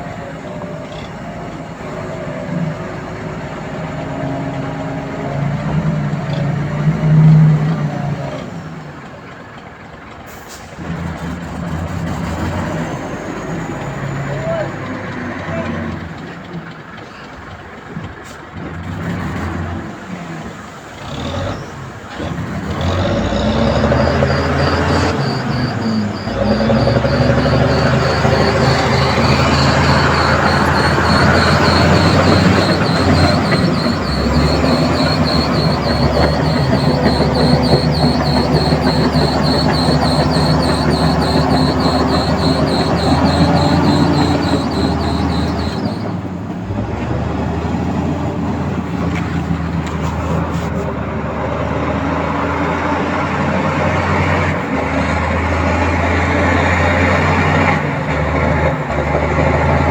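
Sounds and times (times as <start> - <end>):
diesel engine drone: 0.0 - 59.9
metallic rattle and squeal: 21.1 - 46.8.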